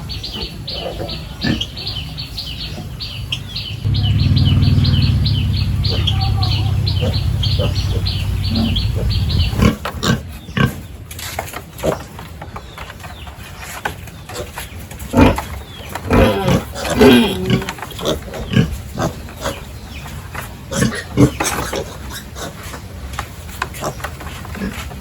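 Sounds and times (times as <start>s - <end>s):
pigs grunting and squealing: 14.3s - 19.8s, 20.6s - 22.8s.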